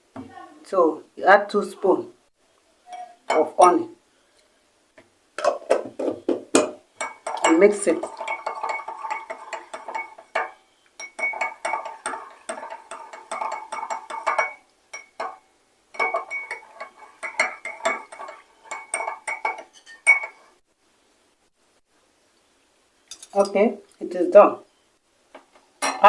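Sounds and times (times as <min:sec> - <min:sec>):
spoon clinking against container: 0:07.0 - 0:20.4, 0:23.1 - 0:23.6.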